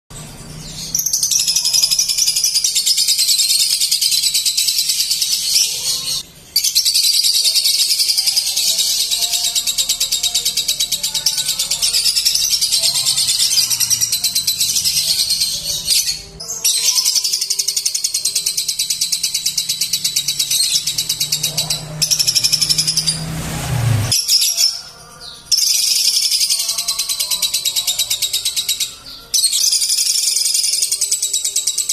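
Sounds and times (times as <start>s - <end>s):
lovebird chattering trill: 25.6s - 31.9s.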